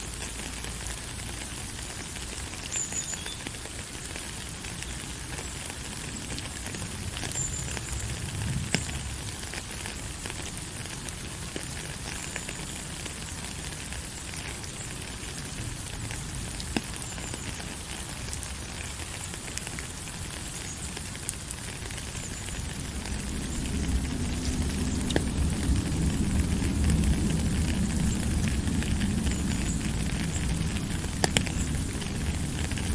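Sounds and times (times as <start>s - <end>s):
sharp ticks of raindrops: 0.0s - 32.9s
steady rain hiss: 0.0s - 32.9s
low rumble: 22.3s - 32.9s.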